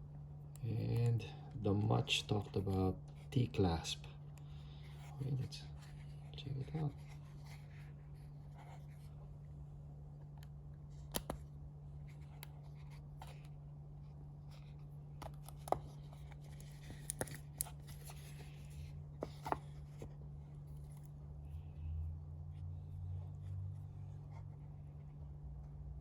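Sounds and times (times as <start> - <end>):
steady low hum: 0.0 - 26.0
light rustling of packaging: 0.6 - 21.4.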